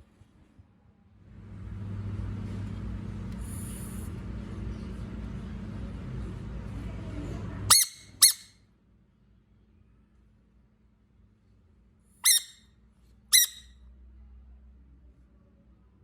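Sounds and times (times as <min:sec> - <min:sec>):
low rumbling noise: 0:01.2 - 0:08.2
frog screaming: 0:13.4 - 0:13.6.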